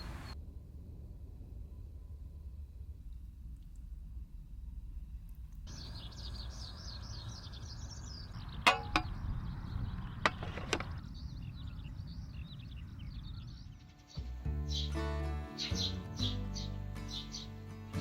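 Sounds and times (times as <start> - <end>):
low wind rumble: 0.0 - 14.5
skylark singing: 5.7 - 15.0.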